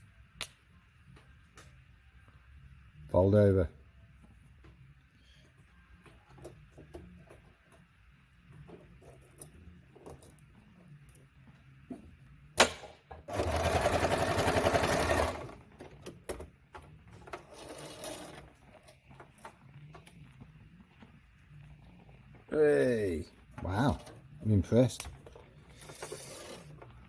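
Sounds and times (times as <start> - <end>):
sewing machine stitching: 13.3 - 15.6, 17.4 - 18.5.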